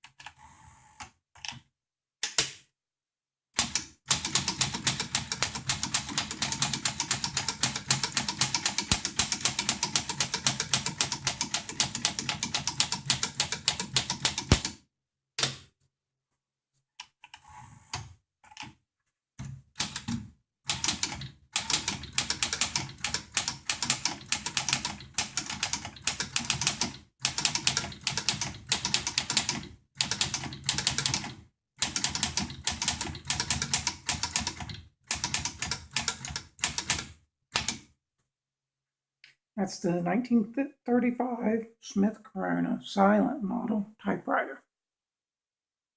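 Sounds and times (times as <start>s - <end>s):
manual typewriter key strikes: 3.6s - 14.8s.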